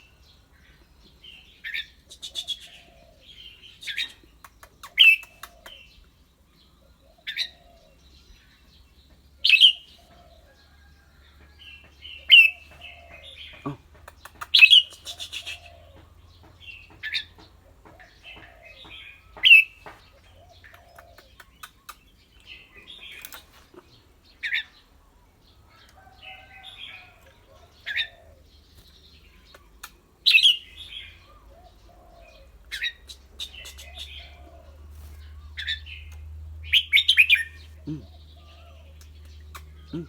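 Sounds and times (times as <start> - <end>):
faint clicks: 4.4 - 5.8, 28.8 - 30.0.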